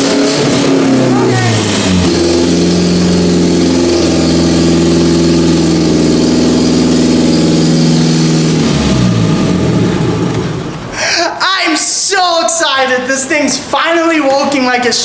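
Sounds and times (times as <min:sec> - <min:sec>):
car engine running in gear: 0:00.0 - 0:10.9.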